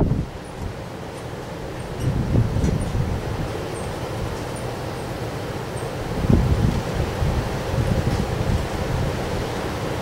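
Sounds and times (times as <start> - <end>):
strong wind buffeting microphone: 0.0 - 0.8, 1.6 - 4.5, 6.0 - 10.0.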